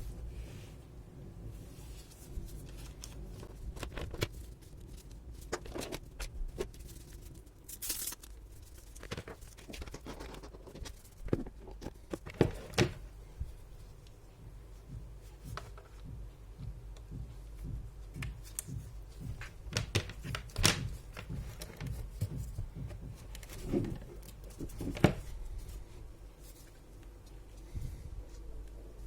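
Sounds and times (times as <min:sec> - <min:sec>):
packaging crinkling: 0:02.6 - 0:12.3
packaging clicks and knocks: 0:18.2 - 0:25.2.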